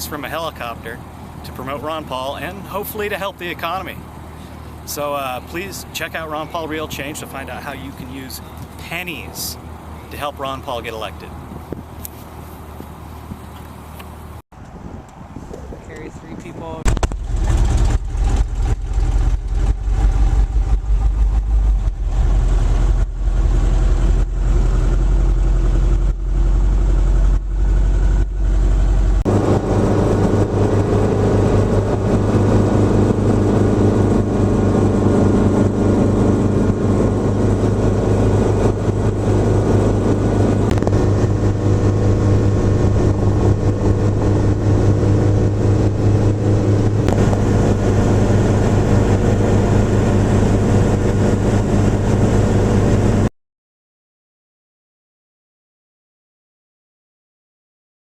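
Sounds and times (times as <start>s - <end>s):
short crackles: 40.6s - 41.2s
helicopter engine and rotor: 47.2s - 53.2s.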